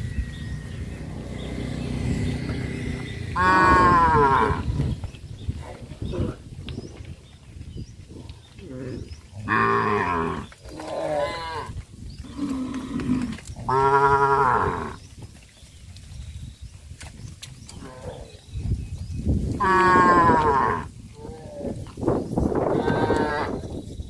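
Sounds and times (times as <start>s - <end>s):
cows mooing: 0.3s - 5.0s, 8.6s - 15.0s, 19.6s - 21.9s, 22.6s - 23.7s.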